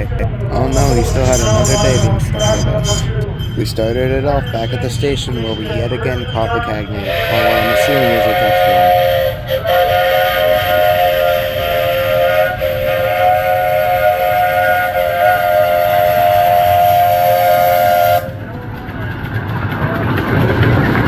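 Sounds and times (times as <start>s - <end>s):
steam locomotive chime whistle: 0.5s - 18.6s.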